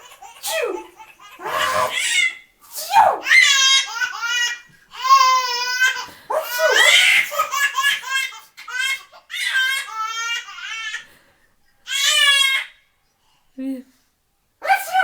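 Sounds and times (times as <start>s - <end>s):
baby laughing: 0.0s - 2.4s, 3.2s - 11.0s, 11.8s - 12.7s.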